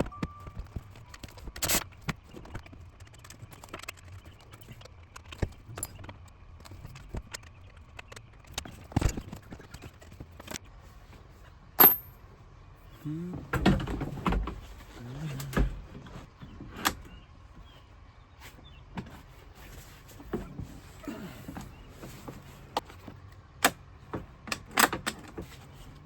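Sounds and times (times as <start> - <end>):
metallic clinks of hand tools: 11.8 - 12.2.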